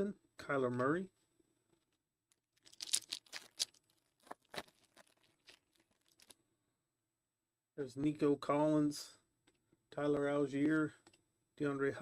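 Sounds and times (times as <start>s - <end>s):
cards rustling and clicking: 2.6s - 6.4s
foil wrapper tearing: 2.6s - 6.4s.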